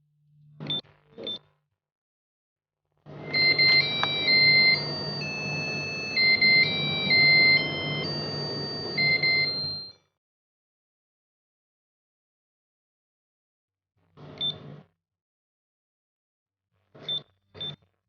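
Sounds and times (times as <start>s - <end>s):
alarm clock beeping melody: 3.2s - 10.0s
low buzz: 3.3s - 9.3s
button beep: 3.3s - 9.9s.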